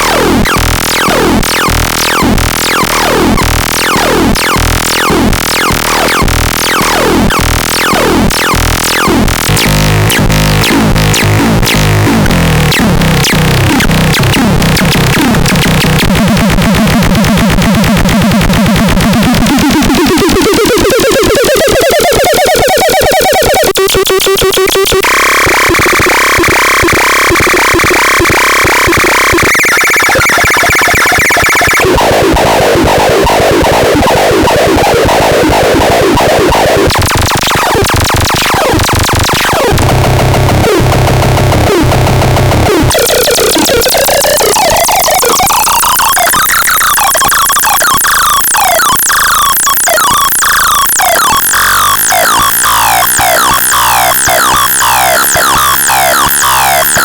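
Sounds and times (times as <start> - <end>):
harsh electronic synthesizer sounds: 0.0 - 57.0
repeating electronic blips: 0.1 - 11.9, 19.2 - 32.2, 36.9 - 57.0
rising synth sweep: 50.4 - 57.0.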